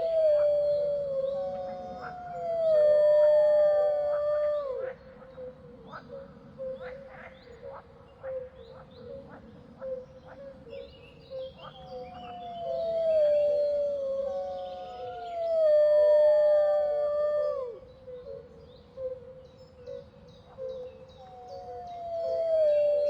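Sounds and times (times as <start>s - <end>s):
wolves howling: 0.0s - 4.9s, 12.2s - 17.8s, 21.3s - 23.0s.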